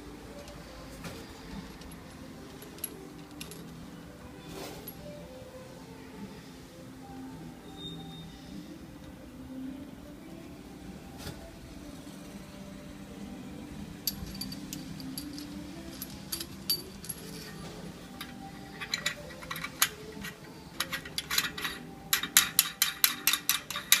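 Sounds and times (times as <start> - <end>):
low steady hum: 0.0 - 24.0
metallic tool clicks and clinks: 14.0 - 24.0.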